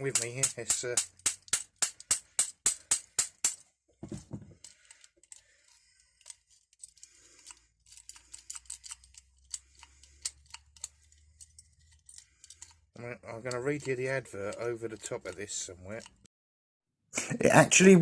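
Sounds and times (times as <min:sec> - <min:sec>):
key rattling in padlock: 0:04.6 - 0:16.2.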